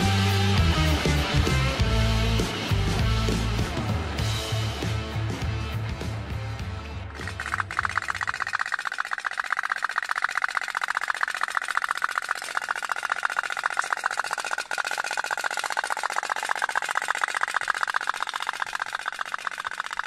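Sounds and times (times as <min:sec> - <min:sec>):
toy steam boat popping: 0:07.2 - 0:20.0.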